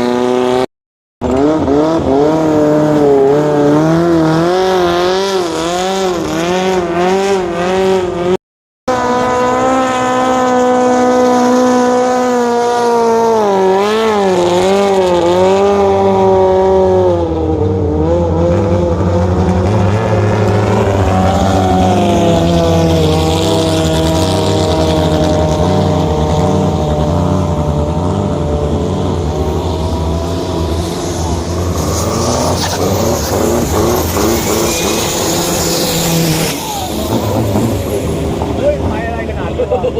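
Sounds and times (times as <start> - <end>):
boat engine running hard: 9.0 - 31.7, 32.7 - 39.9.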